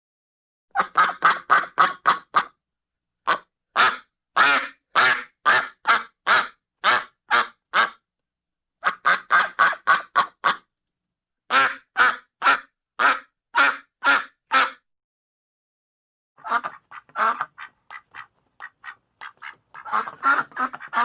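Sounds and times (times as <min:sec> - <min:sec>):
duck quacking: 0:00.7 - 0:02.6, 0:03.2 - 0:08.0, 0:08.8 - 0:10.7, 0:11.5 - 0:14.8, 0:16.4 - 0:21.0.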